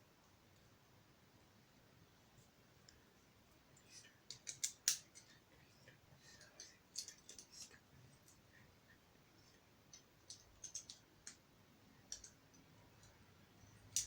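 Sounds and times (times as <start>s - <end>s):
plastic bricks clicking together: 10.3s - 11.4s.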